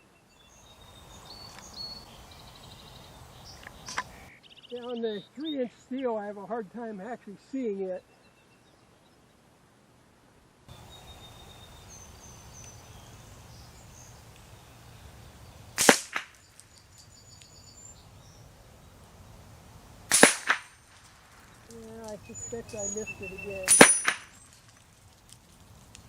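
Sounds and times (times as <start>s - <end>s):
faint chirping: 0.0s - 9.5s, 10.7s - 20.1s, 20.7s - 24.9s
rifle shots: 15.8s - 16.4s, 20.1s - 20.8s, 23.6s - 24.4s.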